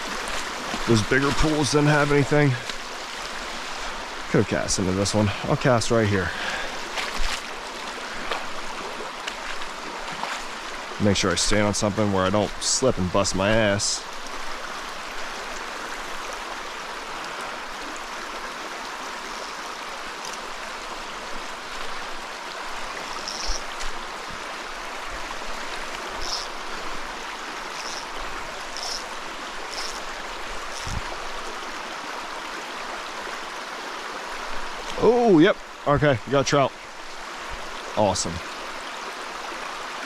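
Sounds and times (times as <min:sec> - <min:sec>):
stream rushing over rocks: 0:00.0 - 0:40.0.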